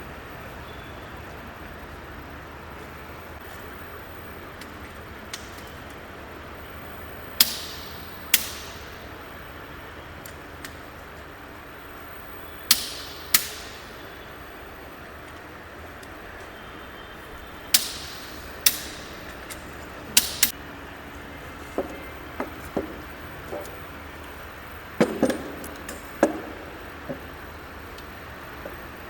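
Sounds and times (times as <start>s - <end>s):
torque wrench clicking: 7.4s - 9.0s, 12.6s - 14.0s, 17.7s - 20.6s.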